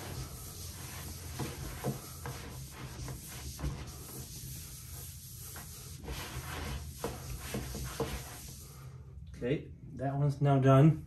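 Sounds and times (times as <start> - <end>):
sanding pad scuffing: 0.0 - 8.8.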